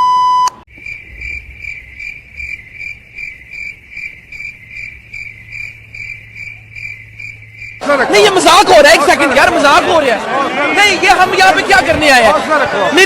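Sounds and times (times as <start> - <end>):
short loud beep: 0.0 - 0.6
crickets chirping: 0.7 - 9.1.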